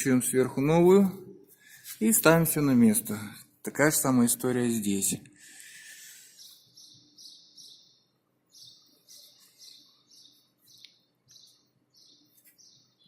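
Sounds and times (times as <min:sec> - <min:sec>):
small bird chirping: 0:06.2 - 0:13.0.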